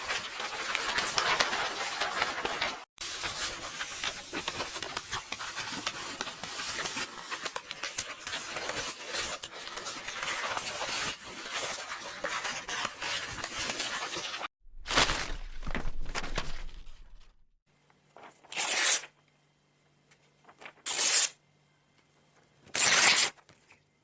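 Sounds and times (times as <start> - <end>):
book pages rustling and turning: 0.0 - 17.4, 20.1 - 20.8.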